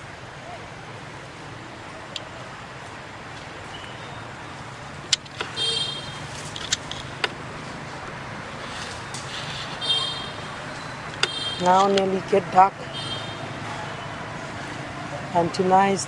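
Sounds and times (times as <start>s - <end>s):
road traffic noise: 0.0s - 16.0s
sharp clicks: 5.1s - 5.6s, 10.7s - 12.1s.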